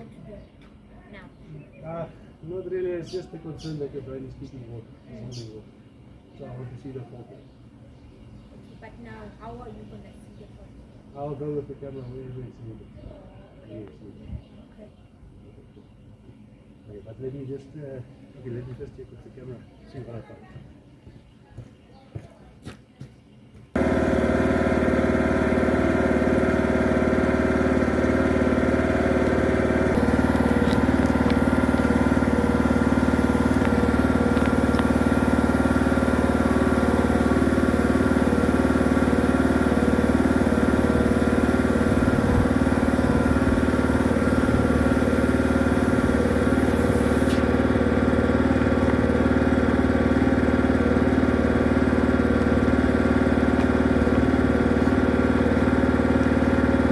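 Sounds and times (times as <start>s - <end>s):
small engine idling: 23.7s - 56.9s.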